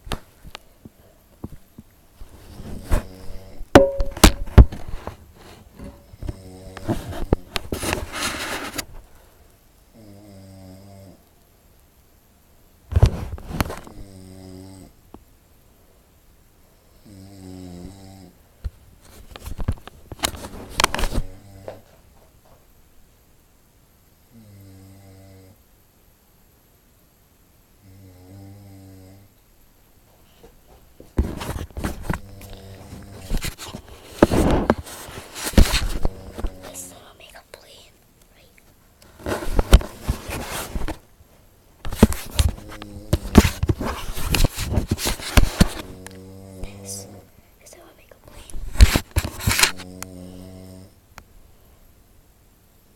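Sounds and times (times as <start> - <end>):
person snoring: 32.2 - 33.3, 45.6 - 47.3, 49.7 - 51.0.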